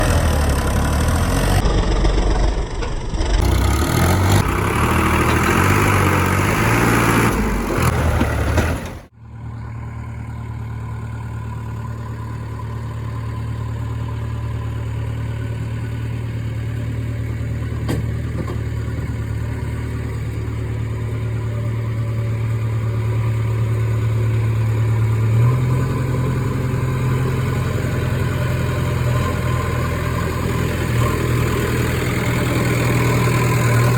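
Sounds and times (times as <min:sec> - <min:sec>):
heavy diesel engine running: 0:00.0 - 0:33.9.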